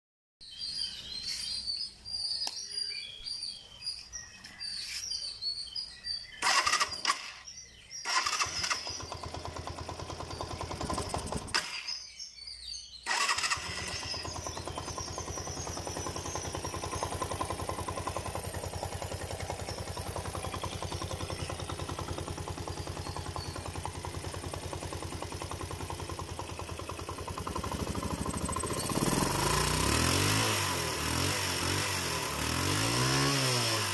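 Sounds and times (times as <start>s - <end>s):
birds chirping: 0.4s - 31.8s
motorcycle engine cranking: 6.4s - 12.0s, 13.1s - 33.9s
engine idling with knock: 8.9s - 11.6s, 14.2s - 30.0s.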